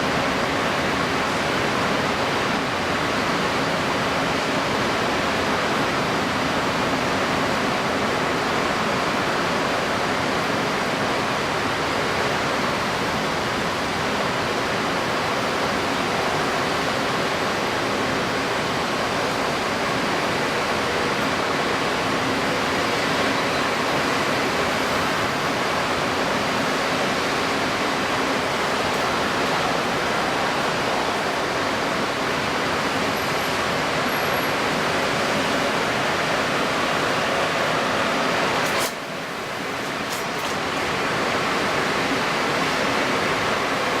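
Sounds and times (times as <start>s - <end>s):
strong wind: 0.0s - 44.0s
wind-stirred water: 0.0s - 44.0s.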